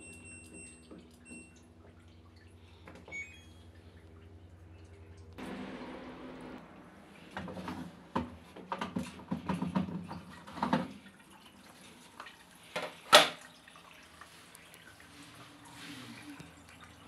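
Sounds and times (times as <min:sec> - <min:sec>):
water splashing and dripping: 0:09.0 - 0:17.0.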